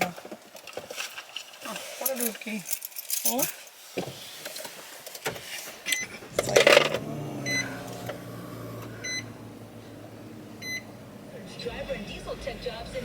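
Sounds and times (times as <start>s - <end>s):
car engine starting and idling: 5.8s - 13.0s
dashboard warning chime: 5.9s - 13.0s.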